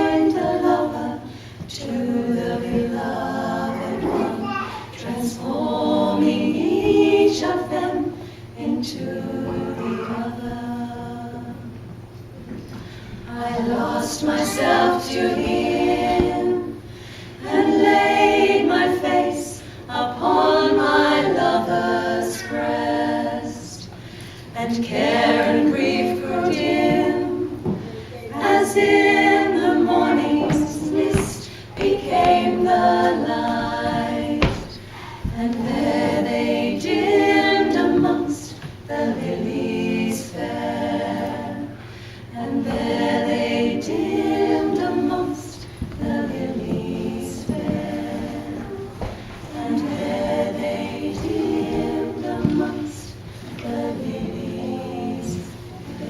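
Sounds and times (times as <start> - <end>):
a cappella choir singing: 0.0 - 56.0.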